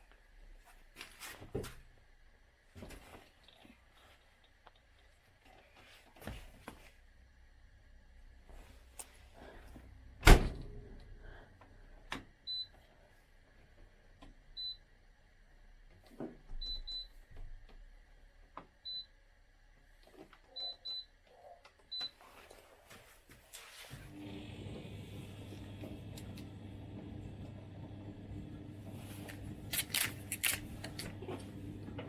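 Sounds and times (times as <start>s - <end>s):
washing machine beeps: 12.4s - 12.8s, 14.6s - 14.9s, 16.5s - 17.2s, 18.8s - 19.1s, 20.5s - 21.1s, 21.9s - 22.2s.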